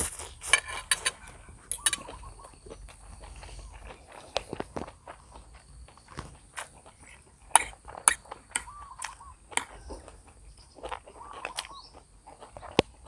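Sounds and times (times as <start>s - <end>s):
person chewing food: 0.0s - 13.0s.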